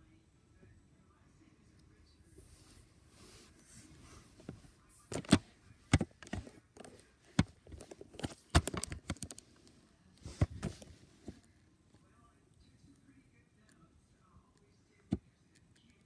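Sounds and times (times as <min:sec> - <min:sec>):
mechanical keyboard clacks: 0:07.4 - 0:09.4.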